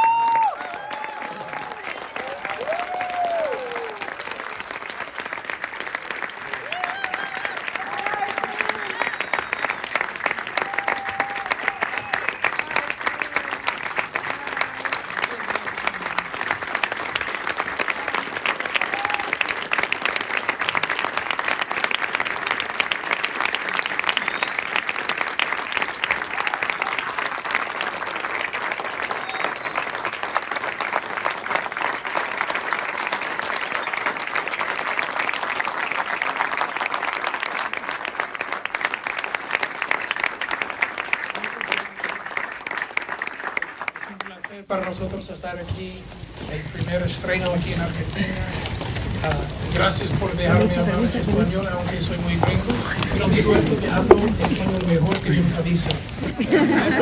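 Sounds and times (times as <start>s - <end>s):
audience applauding: 0.0s - 57.0s.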